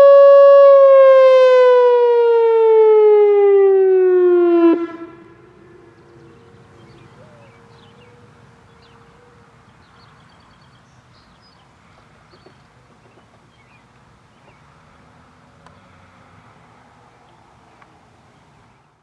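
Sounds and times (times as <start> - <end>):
electronic warning siren: 0.0 - 9.4
distant road traffic rumble: 0.0 - 19.0
small birds chirping: 5.8 - 14.8.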